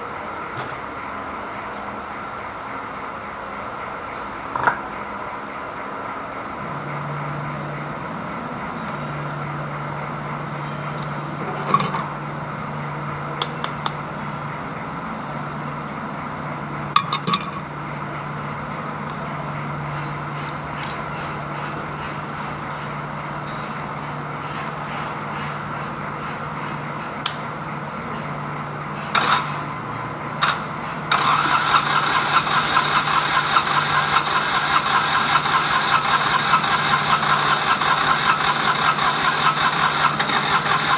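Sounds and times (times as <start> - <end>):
diesel engine starting and running: 0.0 - 40.9.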